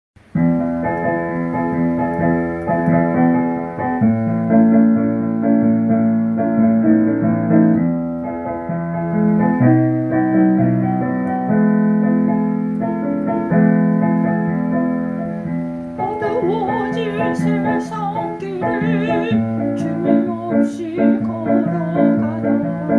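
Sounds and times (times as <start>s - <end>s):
keyboard playing gospel chords: 11.8s - 22.9s
person singing with vibrato: 16.0s - 22.9s.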